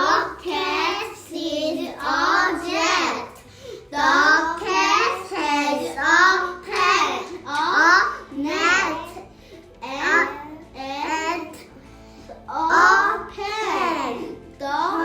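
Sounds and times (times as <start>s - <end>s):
children singing: 0.0s - 9.2s.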